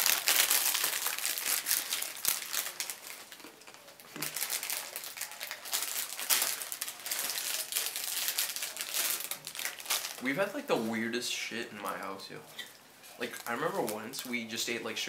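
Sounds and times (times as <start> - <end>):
plastic wrapper crinkling: 0.0 - 10.5, 13.1 - 14.5.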